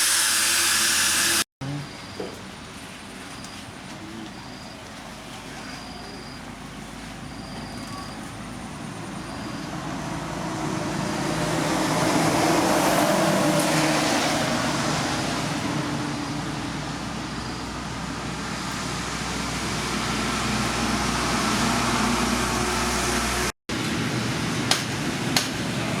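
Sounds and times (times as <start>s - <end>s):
motor vehicle passing by: 8.8s - 17.1s, 18.1s - 23.5s.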